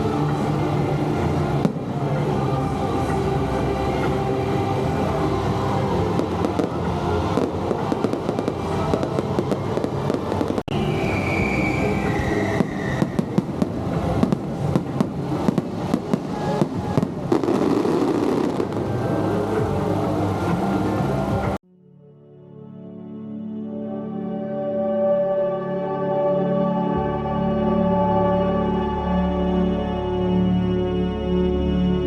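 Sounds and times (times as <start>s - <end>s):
firework bangs and crackles: 1.2s - 3.2s, 4.0s - 21.6s
whistling firework shell: 10.7s - 13.7s.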